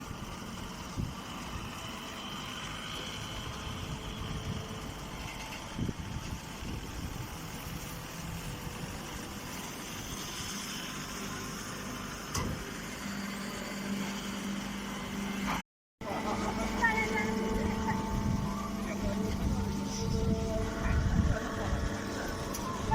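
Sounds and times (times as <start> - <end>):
engine-driven machine running: 0.0 - 22.9
steady hum: 13.0 - 22.9.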